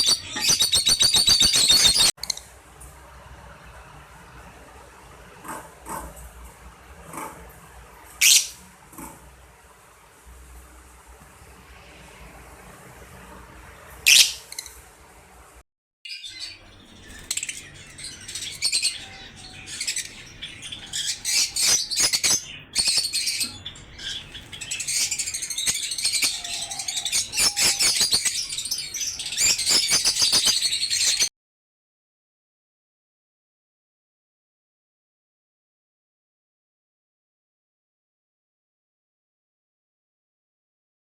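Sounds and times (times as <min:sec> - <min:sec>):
birds chattering: 0:00.0 - 0:02.1, 0:16.1 - 0:31.3.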